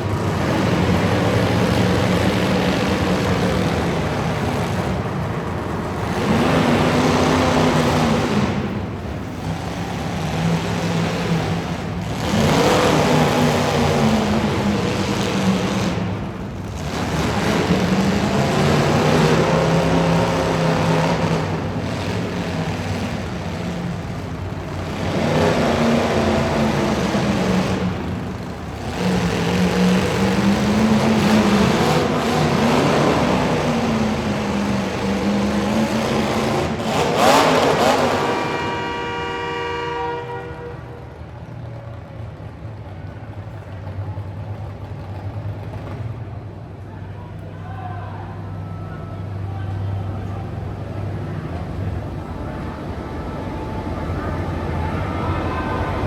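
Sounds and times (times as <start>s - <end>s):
truck engine running hard: 0.0s - 56.0s
horn-like tone: 38.1s - 40.9s.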